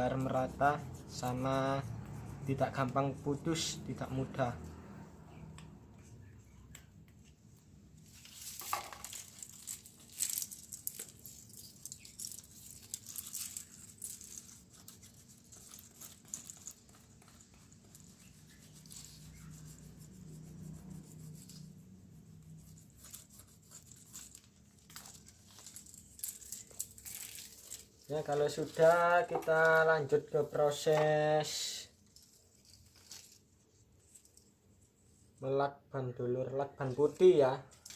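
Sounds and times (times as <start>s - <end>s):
plastic sheet crinkling: 8.0s - 19.6s, 22.7s - 31.3s.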